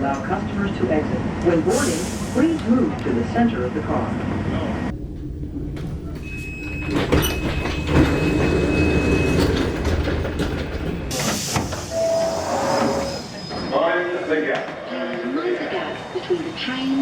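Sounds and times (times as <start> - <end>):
rail car rumble: 0.0 - 17.0
high beep: 11.9 - 13.2.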